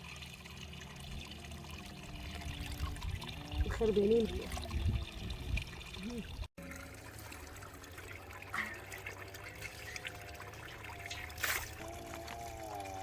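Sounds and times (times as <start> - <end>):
water trickling: 0.0 - 13.0
sharp splash: 11.0 - 11.8.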